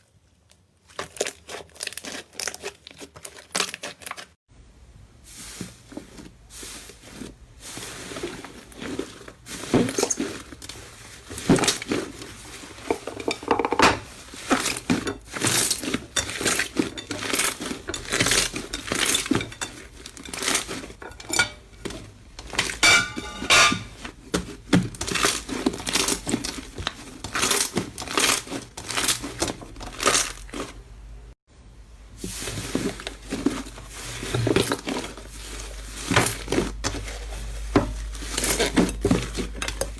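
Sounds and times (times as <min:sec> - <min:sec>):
slime clicking and crackling: 0:24.3 - 0:30.8.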